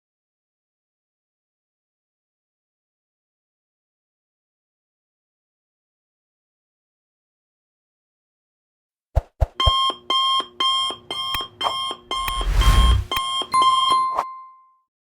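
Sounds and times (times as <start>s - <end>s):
electronic alarm beeps: 9.6s - 14.4s
clicks: 10.9s - 13.5s
noisy burst: 12.2s - 13.2s.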